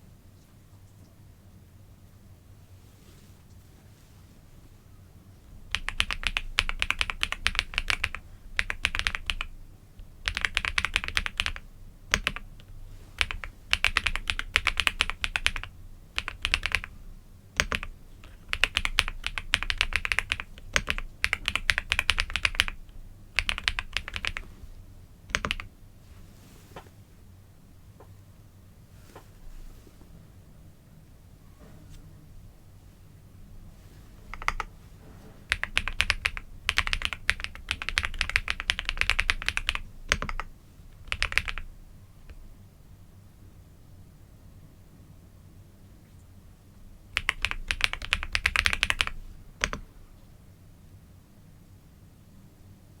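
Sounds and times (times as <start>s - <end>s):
typing on computer keyboard: 5.7s - 17.0s, 17.6s - 24.5s, 25.3s - 25.7s, 34.3s - 34.7s, 35.5s - 41.7s, 47.2s - 49.9s.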